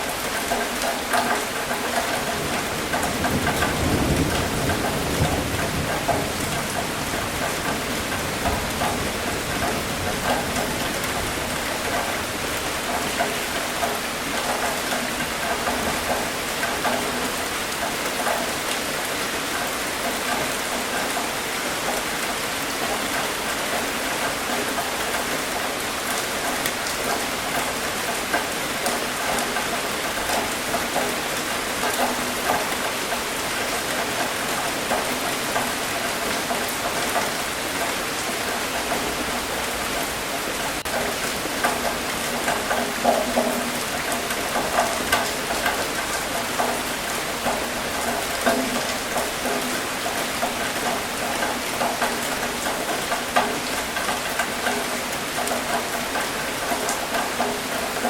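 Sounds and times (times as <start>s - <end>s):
rain pattering on a surface: 0.0s - 58.0s.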